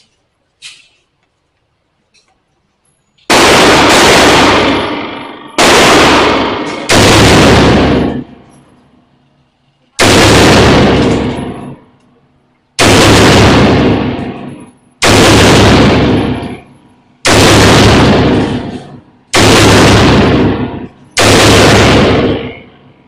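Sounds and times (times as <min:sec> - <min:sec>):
gunshots: 0:03.3 - 0:08.5, 0:10.0 - 0:11.9, 0:12.8 - 0:23.0.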